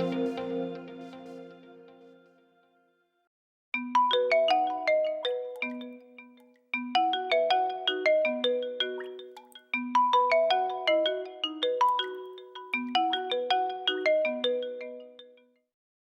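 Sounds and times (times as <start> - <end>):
phone ringtone melody: 0.0 - 2.3.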